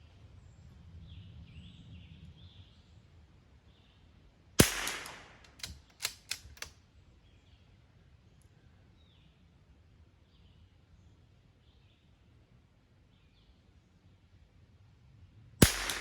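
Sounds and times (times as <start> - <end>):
rifle shot with echo: 4.6 - 6.7, 15.6 - 16.0
sharp clicks: 4.6 - 6.8, 15.6 - 16.0.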